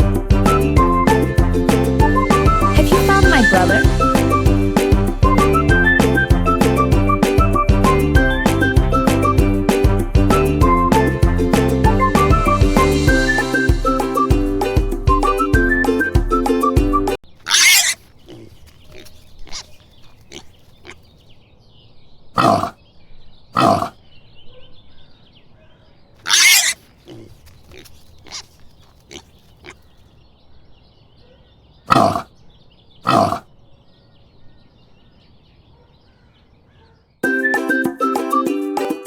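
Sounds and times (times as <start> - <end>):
pigs grunting and squealing: 17.4 - 21.1, 22.4 - 22.8, 23.6 - 24.0, 26.2 - 29.9, 31.9 - 32.4, 33.0 - 33.5.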